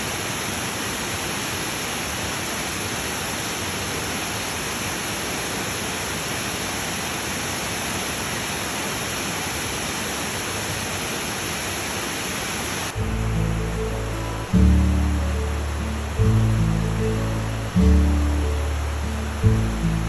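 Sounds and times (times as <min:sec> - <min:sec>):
flowing water rushing: 0:00.0 - 0:20.0
soft music with low notes: 0:13.0 - 0:20.0.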